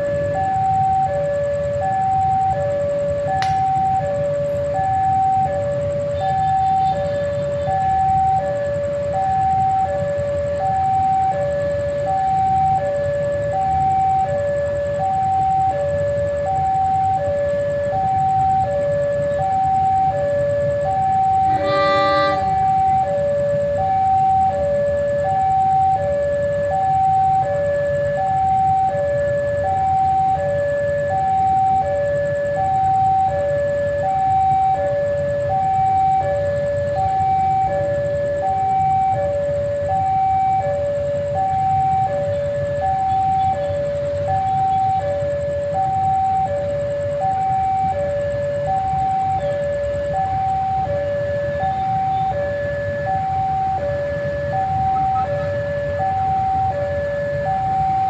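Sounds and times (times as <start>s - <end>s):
level crossing alarm ding-dong: 21.2s - 23.1s
locomotive horn blast: 21.4s - 22.8s.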